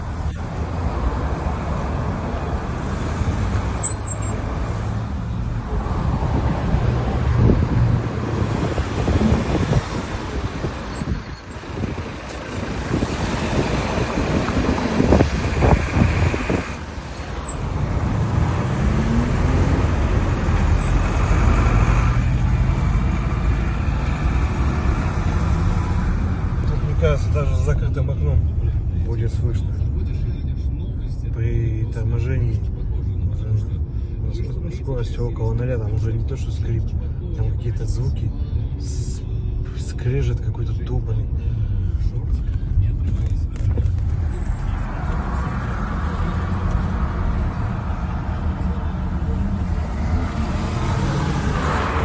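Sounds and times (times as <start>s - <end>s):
car road and engine rumble: 0.0s - 52.0s
brake squeaks: 3.7s - 4.4s, 7.4s - 7.8s, 10.8s - 11.7s, 16.4s - 17.6s.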